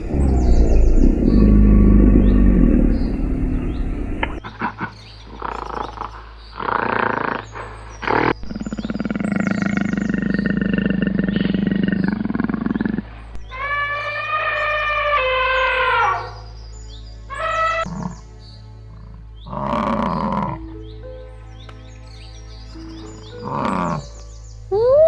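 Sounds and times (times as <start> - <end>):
large animal roaring: 0.0 - 4.5, 5.4 - 16.3, 17.7 - 18.2, 18.9 - 20.7, 23.4 - 24.2.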